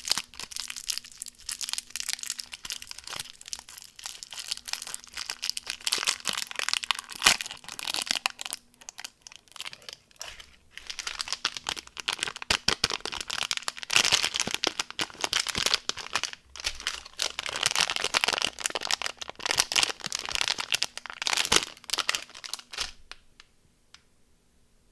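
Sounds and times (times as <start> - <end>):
plastic wrappers crinkling: 0.0 - 23.5.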